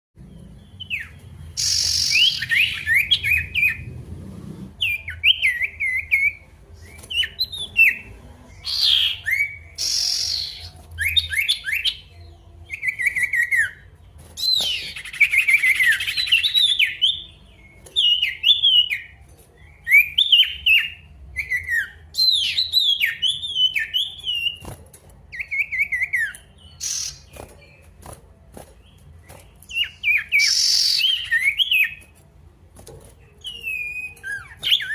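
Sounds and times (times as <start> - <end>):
harsh bird notes: 0.2 - 32.2
songbird chirping whistles: 8.6 - 12.1, 29.7 - 32.1, 33.4 - 34.9.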